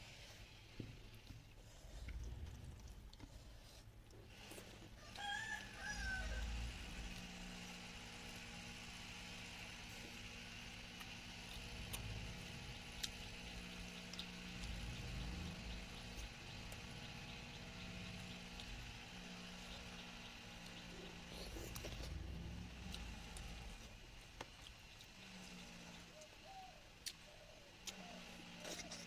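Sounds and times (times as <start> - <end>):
steady low hum: 0.0 - 29.0
rooster crowing: 5.0 - 7.1.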